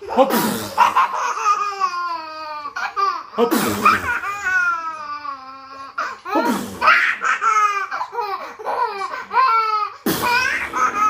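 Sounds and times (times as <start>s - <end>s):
adult fake sneezes: 0.0s - 1.0s, 3.4s - 4.3s, 6.0s - 7.2s, 10.0s - 11.0s
baby laughing: 0.0s - 11.0s.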